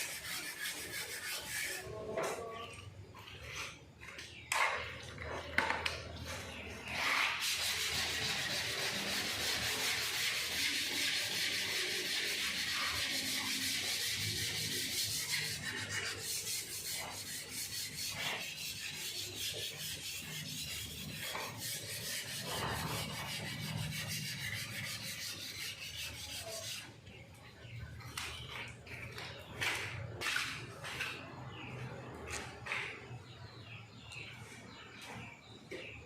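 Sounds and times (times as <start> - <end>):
sandpaper rubbing on car panel: 7.1 - 26.8.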